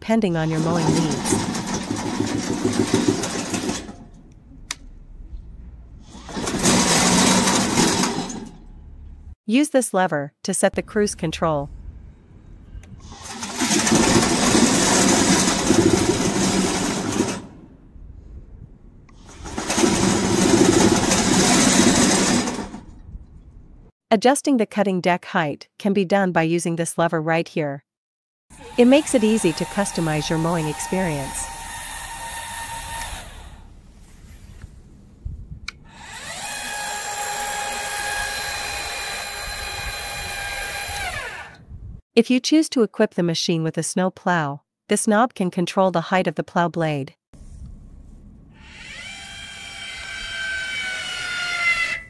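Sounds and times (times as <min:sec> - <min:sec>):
electric mower motors and tracks: 0:00.4 - 0:05.2, 0:06.0 - 0:09.3, 0:12.8 - 0:17.8, 0:19.1 - 0:23.3, 0:28.5 - 0:34.8, 0:35.6 - 0:41.6, 0:48.6 - 0:52.0
small electric motor whining: 0:28.5 - 0:33.8, 0:35.9 - 0:41.6, 0:48.6 - 0:52.0.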